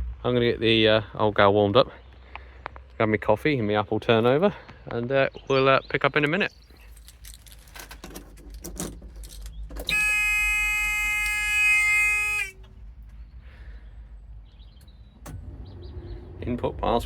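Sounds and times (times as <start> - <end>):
electronic warning buzzer: 9.9 - 12.6.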